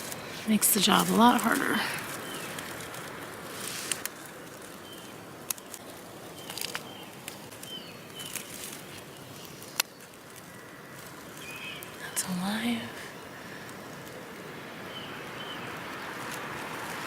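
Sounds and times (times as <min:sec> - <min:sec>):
foliage rustling: 0:00.0 - 0:17.0
bird chirps: 0:04.3 - 0:12.4.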